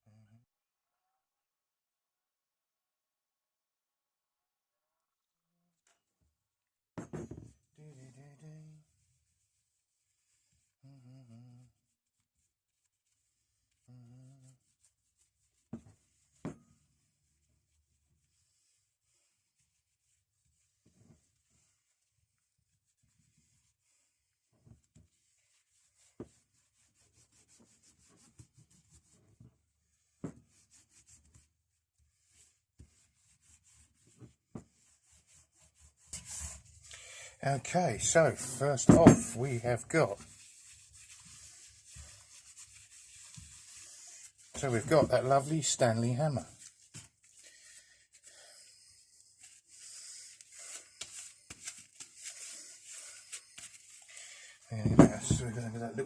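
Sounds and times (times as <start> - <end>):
hand rubbing strokes: 8.4 - 16.5, 25.1 - 29.2, 32.1 - 56.0
tools rubbing and rustling: 37.6 - 47.4, 50.3 - 56.0.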